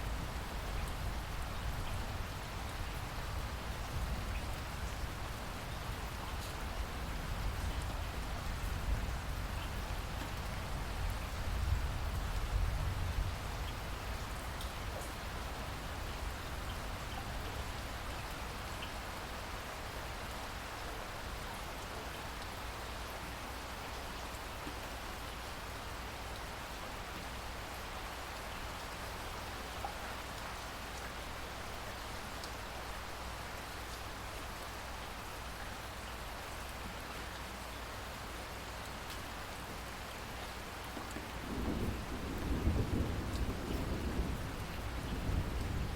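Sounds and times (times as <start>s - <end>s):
low thunder rumble: 41.4s - 45.9s.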